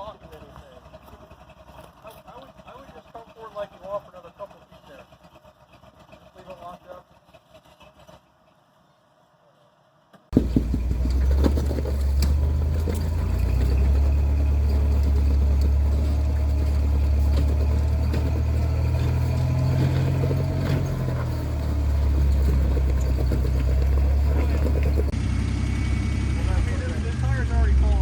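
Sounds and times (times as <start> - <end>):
vehicle engine running at low revs: 0.0 - 8.3, 10.3 - 28.0
sharp clicks and knocks: 10.3 - 25.1.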